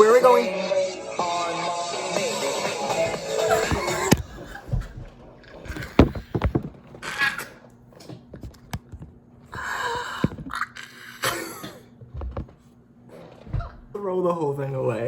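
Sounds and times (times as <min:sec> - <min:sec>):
knocks and clicks of handling: 0:05.7 - 0:07.0.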